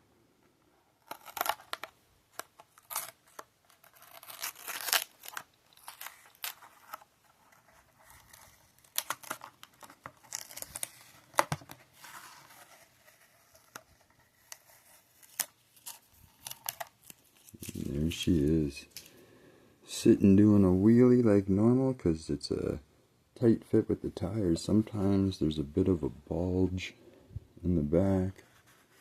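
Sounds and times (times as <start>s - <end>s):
plastic packaging crinkling: 1.0s - 18.2s.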